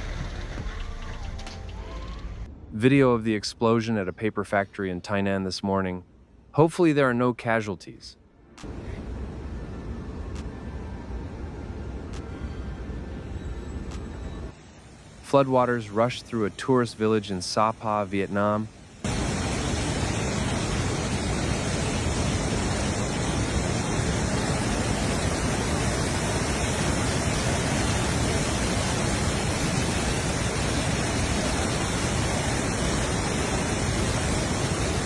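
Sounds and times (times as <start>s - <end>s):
floodwater rushing: 19.0s - 35.0s.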